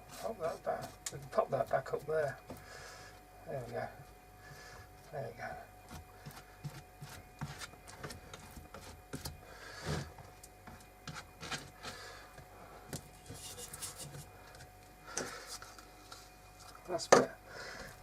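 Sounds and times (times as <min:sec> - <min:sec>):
scrape: 0:13.2 - 0:14.3.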